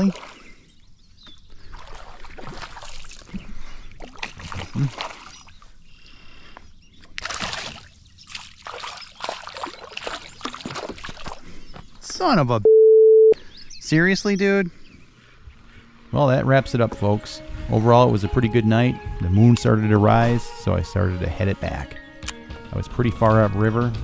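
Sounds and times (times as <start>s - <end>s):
water splashing and sloshing: 0.0s - 12.1s.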